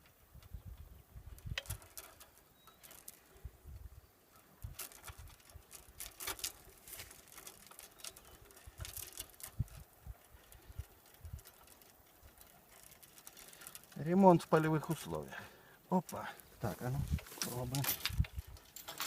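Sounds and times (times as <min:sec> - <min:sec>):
chain and carabiner clicking: 0:01.4 - 0:03.4, 0:04.3 - 0:14.0, 0:16.0 - 0:19.0.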